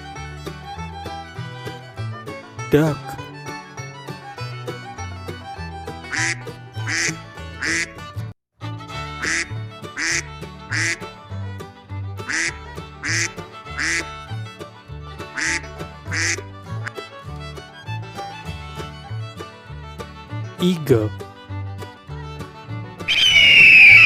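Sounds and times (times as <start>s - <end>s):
background music with bass line: 0.0s - 23.1s
duck quacking: 6.1s - 8.0s, 9.2s - 11.0s, 12.2s - 14.1s, 15.4s - 16.4s.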